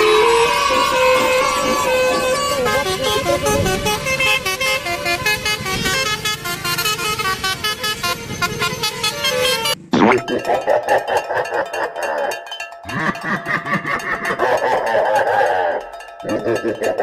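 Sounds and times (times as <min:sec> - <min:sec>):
bus musical air horn melody: 0:00.0 - 0:09.9.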